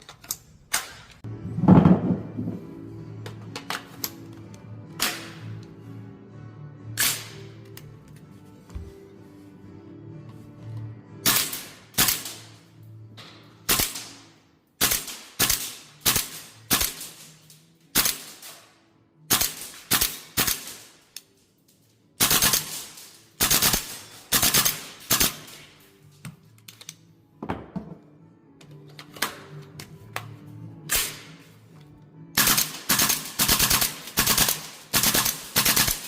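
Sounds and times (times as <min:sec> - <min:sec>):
airsoft rifle firing: 0:14.8 - 0:17.2, 0:22.2 - 0:25.6, 0:32.4 - 0:36.0.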